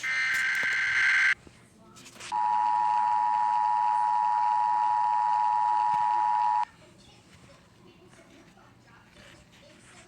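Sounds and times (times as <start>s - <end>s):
two-tone alarm: 0.0s - 1.4s, 2.4s - 6.7s.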